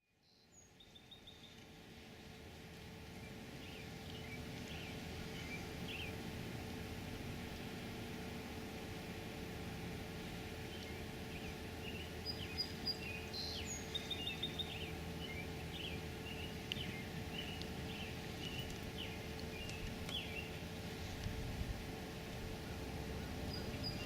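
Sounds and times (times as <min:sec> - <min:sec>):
low background hum: 0:00.0 - 0:24.0
birds chirping: 0:00.3 - 0:01.7, 0:03.0 - 0:07.6, 0:10.4 - 0:21.3, 0:21.9 - 0:24.0.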